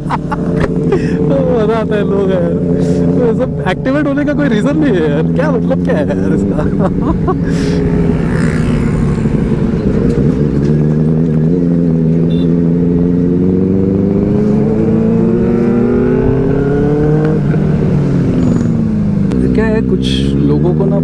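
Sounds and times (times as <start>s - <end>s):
motorcycle engine accelerating: 0.0s - 21.0s.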